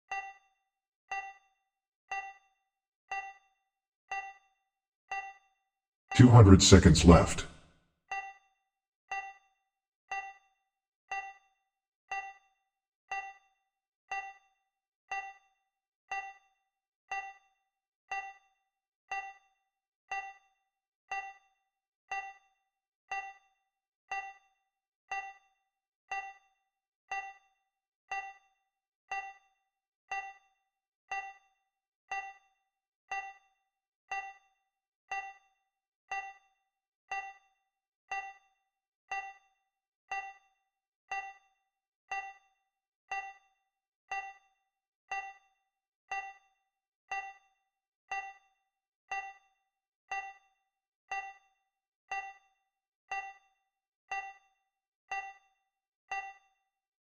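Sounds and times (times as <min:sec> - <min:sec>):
bright timer dings: 0:56.1 - 0:56.4.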